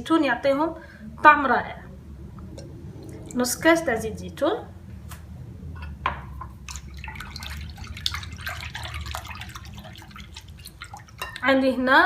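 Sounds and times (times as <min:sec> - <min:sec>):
low steady hum: 0:00.0 - 0:12.0
oil trickling and splashing: 0:02.9 - 0:03.6, 0:06.5 - 0:11.6.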